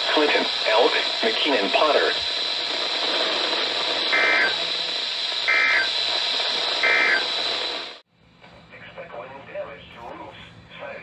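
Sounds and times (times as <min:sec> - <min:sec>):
faint high whine: 0:00.0 - 0:08.0
radio static hiss: 0:00.0 - 0:08.0
warbling data bursts: 0:03.7 - 0:08.0.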